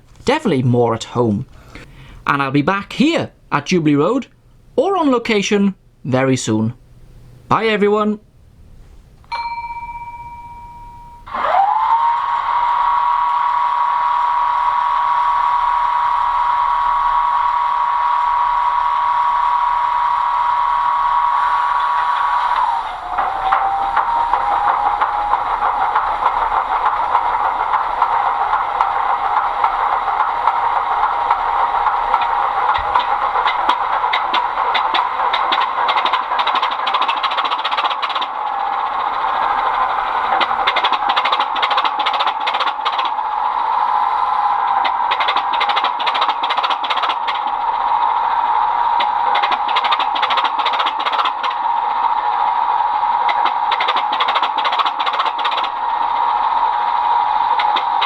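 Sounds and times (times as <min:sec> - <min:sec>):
diesel engine through small speaker: 0:14.5 - 0:36.5.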